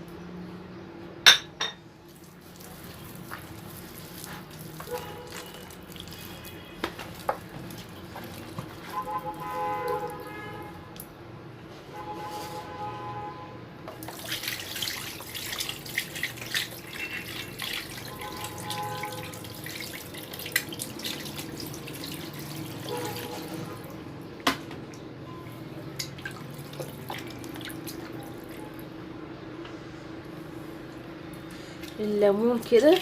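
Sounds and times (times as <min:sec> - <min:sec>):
hands rinsing and splashing: 0:02.1 - 0:11.1, 0:13.9 - 0:24.6, 0:26.0 - 0:28.8, 0:31.4 - 0:33.0.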